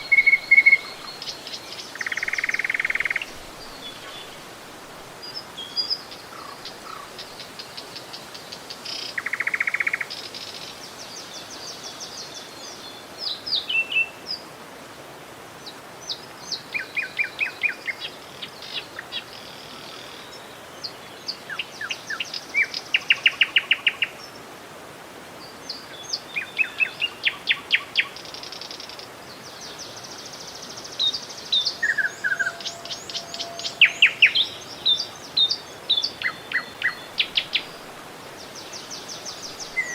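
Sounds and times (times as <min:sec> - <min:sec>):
birds chirping and trilling: 0:00.0 - 0:04.4, 0:31.0 - 0:37.8
river flowing: 0:00.0 - 0:39.9.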